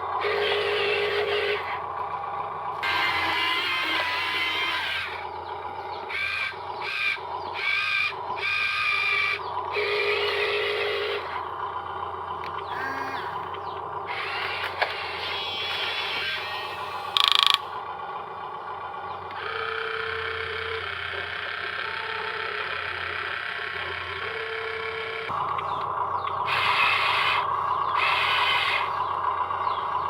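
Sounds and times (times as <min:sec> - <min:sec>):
small electric motors whirring: 0:00.0 - 0:17.9, 0:18.8 - 0:29.8
brief steady tones: 0:12.7 - 0:13.6.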